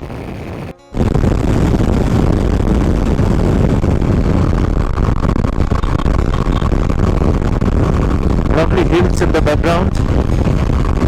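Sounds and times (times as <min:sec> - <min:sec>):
wind buffeting microphone: 0:00.0 - 0:11.0
motorcycle engine at speed: 0:01.0 - 0:11.0.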